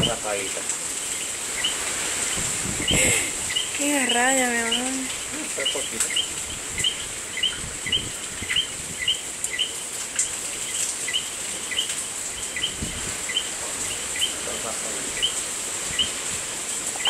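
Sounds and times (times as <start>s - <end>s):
wind rumble on microphone: 0.0s - 0.3s, 1.6s - 3.9s, 4.6s - 9.6s, 12.3s - 16.6s
frogs chirping: 1.1s - 9.9s, 10.6s - 16.2s.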